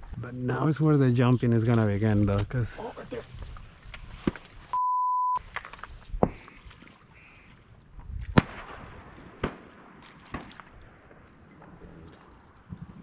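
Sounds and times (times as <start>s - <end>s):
censor bleep: 4.7s - 5.4s
shotgun shots: 8.4s - 10.7s.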